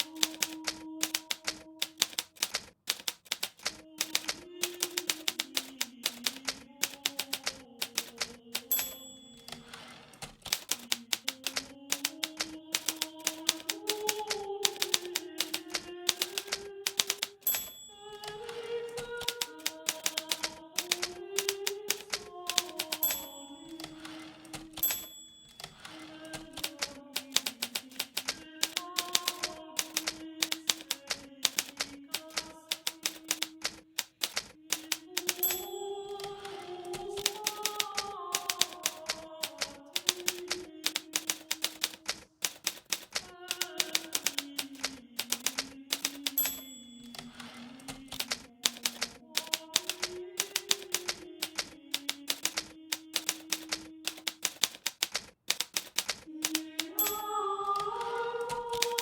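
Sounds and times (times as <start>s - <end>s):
typewriter keys clacking: 0.0s - 59.0s.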